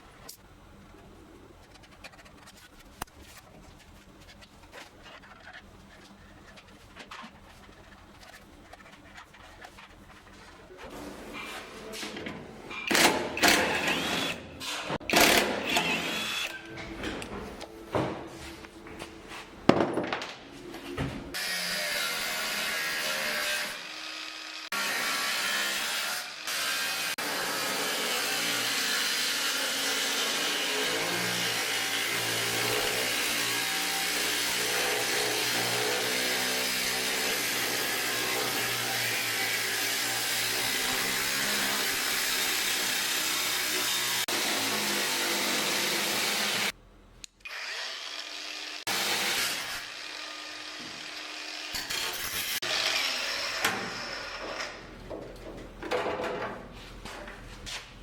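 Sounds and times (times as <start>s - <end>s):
power tool running: 12.9s - 14.4s.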